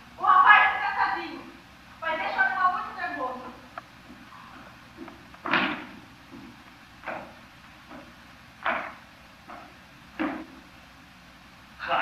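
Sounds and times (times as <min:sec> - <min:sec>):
short knocks: 0:05.0 - 0:10.6.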